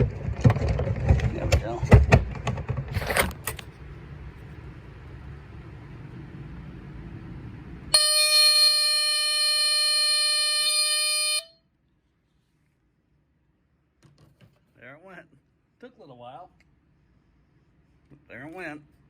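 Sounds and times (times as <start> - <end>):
handling clicks and knocks: 0.0 - 3.7
smoke alarm tone: 8.0 - 11.7.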